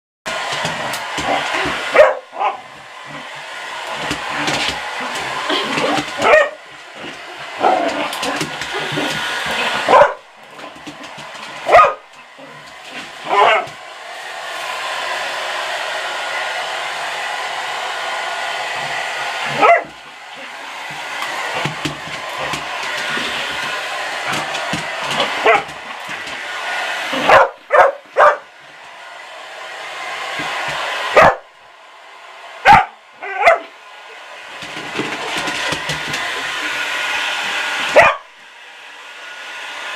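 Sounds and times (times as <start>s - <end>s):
hair dryer blowing: 0.3s - 39.9s
dog barking and yipping: 0.6s - 3.3s, 4.3s - 13.8s, 19.4s - 23.4s, 24.1s - 28.6s, 30.8s - 31.5s, 32.6s - 33.8s, 37.8s - 38.4s.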